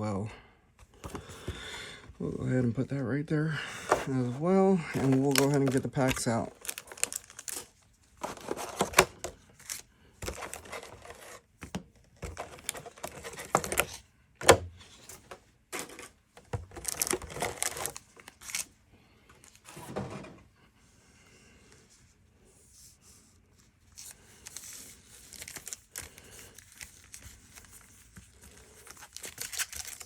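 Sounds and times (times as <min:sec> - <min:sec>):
packaging crinkling and rustling: 0:03.8 - 0:11.5, 0:12.2 - 0:14.0, 0:15.8 - 0:18.7, 0:23.9 - 0:30.0.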